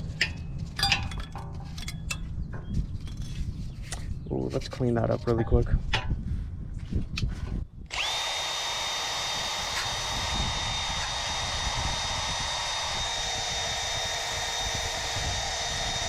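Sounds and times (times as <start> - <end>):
power drill polishing metal: 7.9 - 16.0.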